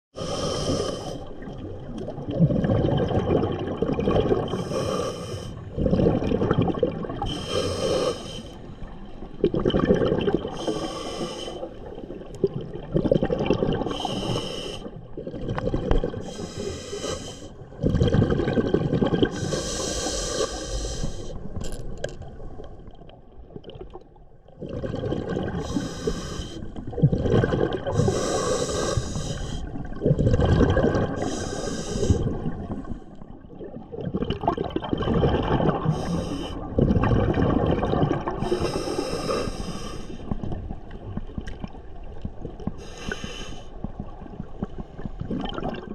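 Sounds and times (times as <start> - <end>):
diver breathing underwater: 0.2 - 1.4, 4.3 - 6.3, 7.2 - 9.0, 9.7 - 12.2, 13.6 - 15.0, 15.8 - 21.5, 24.9 - 33.3, 35.7 - 36.7, 38.2 - 40.5, 42.7 - 43.9.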